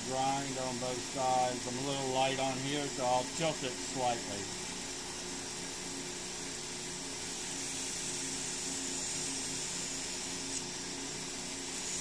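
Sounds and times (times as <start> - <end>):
grinder humming: 0.0 - 12.0
knife blade hissing on grinder: 7.2 - 12.0.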